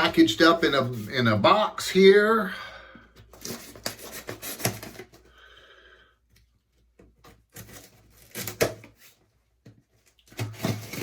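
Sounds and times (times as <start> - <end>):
cardboard rustling and clicks: 3.2 - 5.3, 6.8 - 11.0
knife cutting cardboard box: 3.4 - 5.2, 7.4 - 9.2, 10.3 - 11.0.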